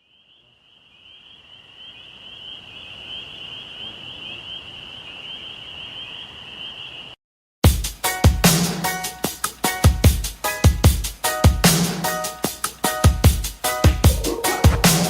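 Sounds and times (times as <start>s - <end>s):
high-pitched trilling animal chorus: 14.1s - 15.0s.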